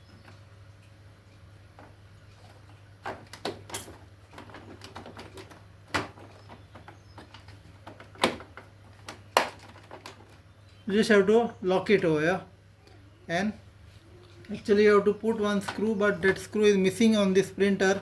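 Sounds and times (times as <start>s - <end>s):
plastic clicks and knocks: 3.0s - 10.4s.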